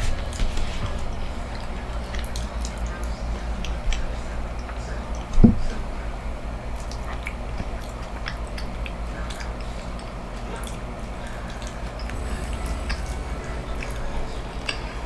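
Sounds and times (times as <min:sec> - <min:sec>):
steady low hum: 0:12.0 - 0:15.0.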